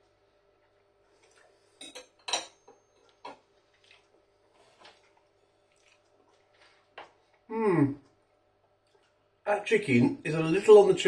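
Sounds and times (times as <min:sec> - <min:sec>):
cutlery clinking against a plate: 0:01.8 - 0:03.4.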